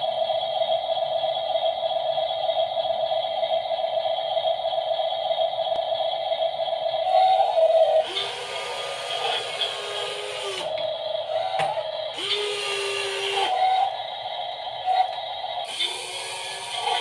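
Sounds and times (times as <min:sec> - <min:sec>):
small electric motor whine: 0:07.4 - 0:14.0, 0:14.9 - 0:17.0
gear and motor buzz: 0:08.0 - 0:10.8, 0:11.4 - 0:13.9, 0:15.7 - 0:17.0.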